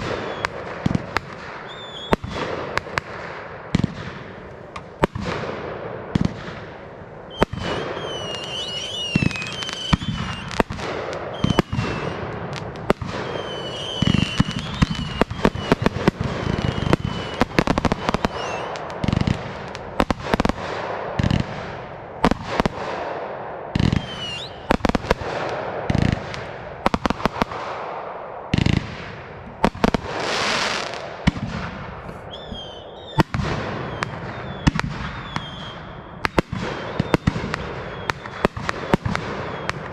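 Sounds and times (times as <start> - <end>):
fireworks bursting: 0.0 - 39.9
fireworks crackling: 0.0 - 39.9
high wavering whistles: 1.7 - 2.2, 7.3 - 10.6, 11.3 - 12.2, 13.1 - 18.8, 24.0 - 24.7, 32.2 - 33.2, 33.8 - 36.1.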